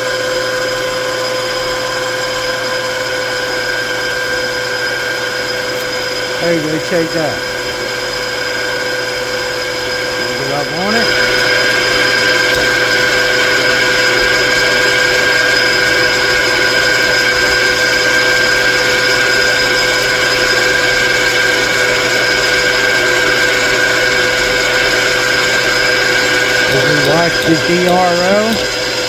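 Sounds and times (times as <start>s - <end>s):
machine tool whine: 0.0s - 29.0s.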